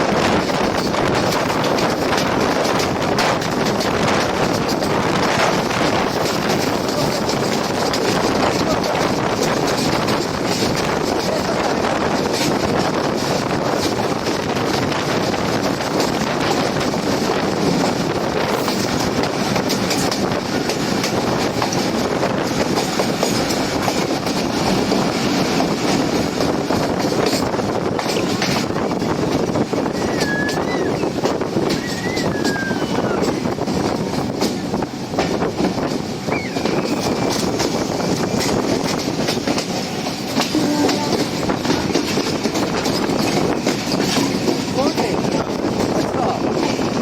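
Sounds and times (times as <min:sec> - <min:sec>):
train rumbling: 0:00.0 - 0:47.0
wheels clicking over rail joints: 0:00.0 - 0:47.0.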